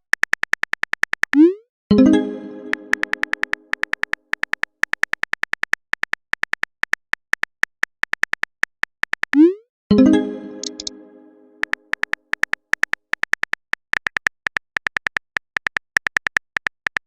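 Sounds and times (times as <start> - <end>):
keyboard typing ticks: 0.0 - 9.6, 10.4 - 11.0, 11.6 - 17.0
chime: 1.9 - 3.0, 9.9 - 11.6.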